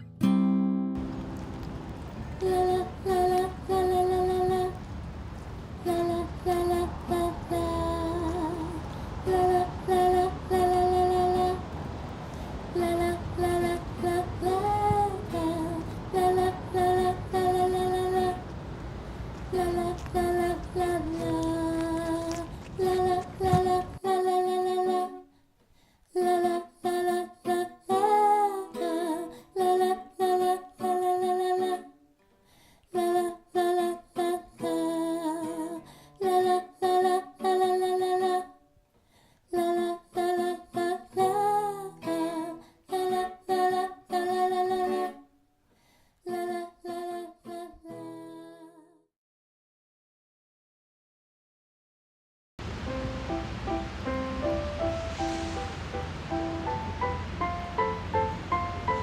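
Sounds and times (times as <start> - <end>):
low background rumble: 1.9 - 24.1, 52.6 - 59.0
woman humming a melody: 5.8 - 11.6, 12.8 - 18.5, 19.5 - 25.2, 46.3 - 49.0.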